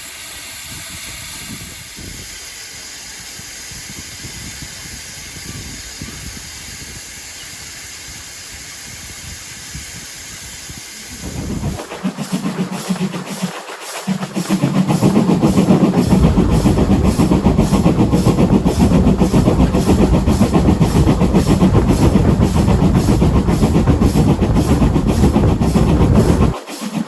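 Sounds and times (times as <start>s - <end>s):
drum kit beat: 11.6s - 26.6s.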